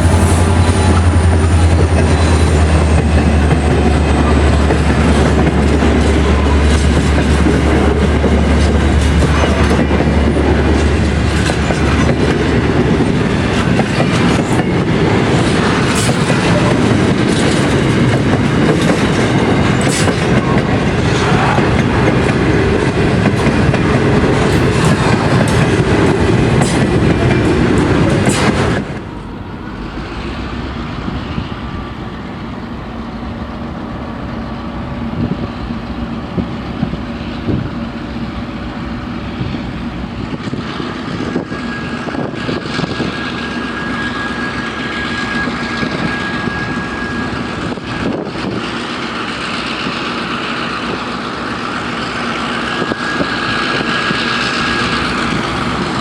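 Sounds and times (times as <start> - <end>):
train passing close: 0.0 - 56.0.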